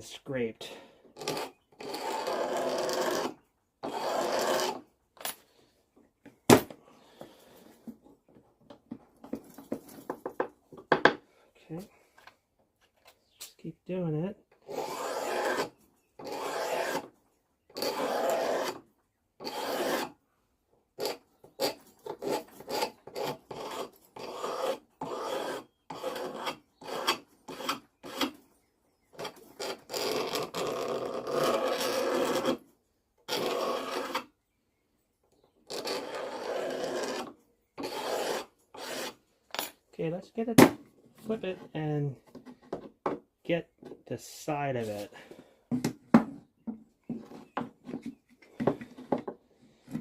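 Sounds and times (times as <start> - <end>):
scraper shaving wooden handle: 1.2 - 4.8, 14.7 - 17.1, 17.8 - 18.8, 19.4 - 20.2, 21.0 - 28.4, 29.1 - 32.6, 33.3 - 34.3, 35.7 - 39.2.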